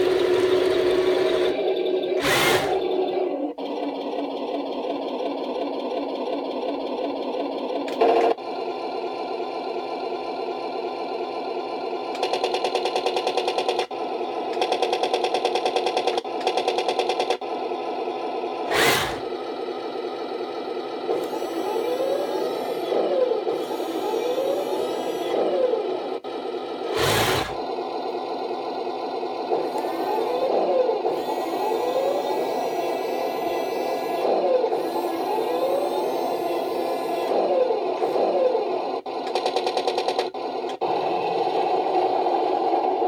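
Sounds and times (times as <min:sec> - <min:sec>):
buzzing toy engine drone: 0:00.0 - 0:03.2, 0:18.6 - 0:19.3, 0:21.2 - 0:26.0, 0:26.9 - 0:27.7, 0:29.5 - 0:39.4.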